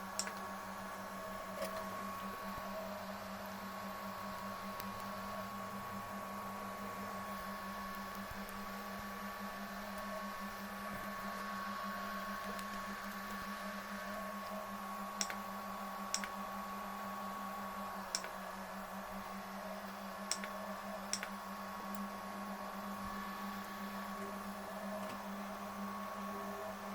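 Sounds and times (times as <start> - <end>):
electrical hum: 0.0 - 26.9
faint steady whine: 0.0 - 26.9
sharp clicks: 0.2 - 0.4, 15.2 - 15.4, 16.1 - 16.4, 18.1 - 18.4, 20.3 - 21.3.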